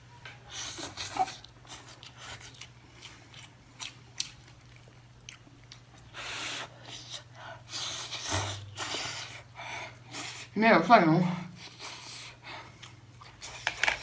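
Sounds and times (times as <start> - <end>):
chewing seafood: 0.5 - 9.5.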